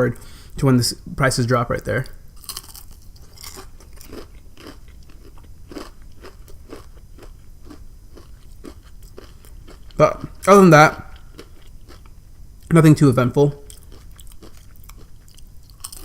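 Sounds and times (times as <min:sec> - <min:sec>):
crunching crispy fried food: 0:01.9 - 0:12.1, 0:13.6 - 0:16.0.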